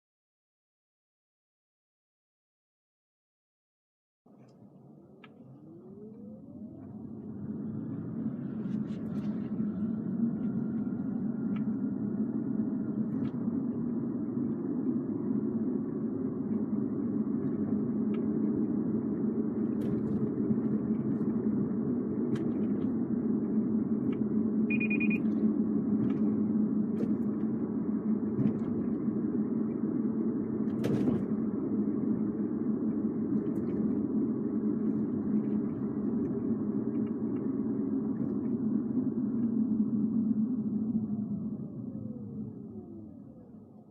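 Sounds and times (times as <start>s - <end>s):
car road rumble: 4.3s - 43.9s
faint rising whine: 4.3s - 43.9s
short beep: 24.7s - 25.3s.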